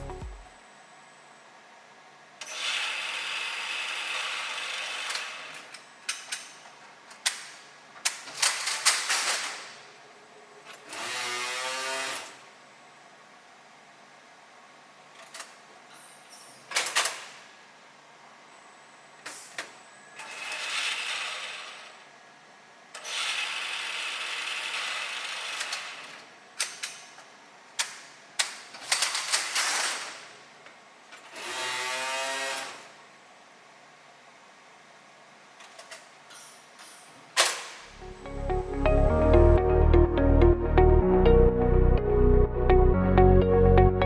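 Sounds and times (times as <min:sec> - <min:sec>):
music: 0:00.0 - 0:00.5, 0:38.0 - 0:44.0.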